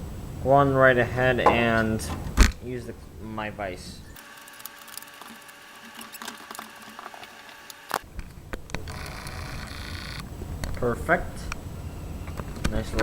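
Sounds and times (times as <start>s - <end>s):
sharp knock: 1.5s - 2.4s
bench vise clicking and squeaking: 1.5s - 2.5s.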